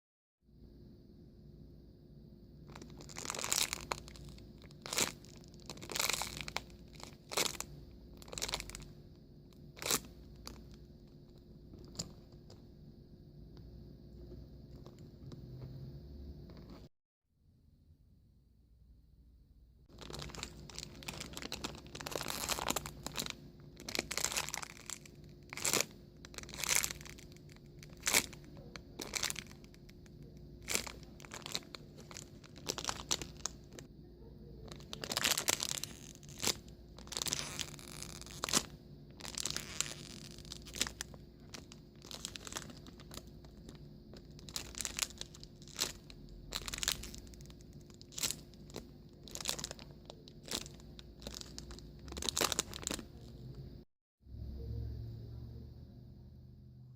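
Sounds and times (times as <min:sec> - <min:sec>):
plastic packaging crinkling: 0:02.7 - 0:12.3, 0:19.9 - 0:33.9, 0:34.6 - 0:53.6.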